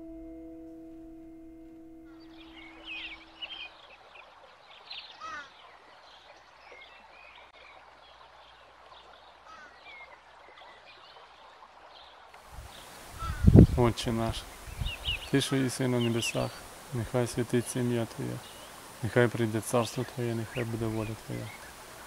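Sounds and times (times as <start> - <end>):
low held tone: 0.0 - 3.7
birds chirping: 0.0 - 22.0
outdoor hiss: 12.3 - 22.0.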